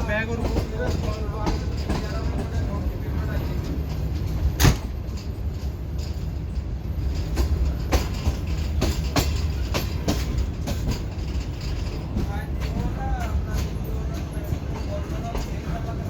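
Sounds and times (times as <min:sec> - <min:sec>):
train wheels clattering on track: 0:00.0 - 0:16.0.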